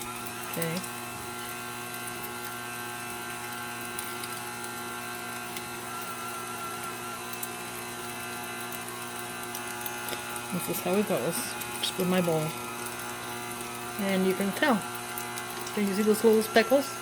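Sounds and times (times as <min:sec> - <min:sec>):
mixer motor hum and whine: 0:00.0 - 0:17.0.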